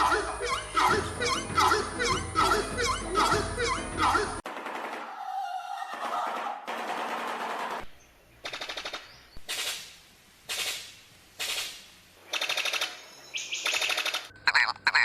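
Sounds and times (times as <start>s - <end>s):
bird harsh rattling calls: 10.5s - 15.0s.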